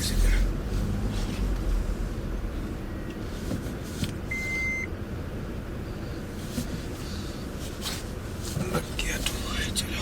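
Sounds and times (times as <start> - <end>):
diesel engine rumbling: 0.0 - 10.0
short electronic beep: 4.3 - 4.9.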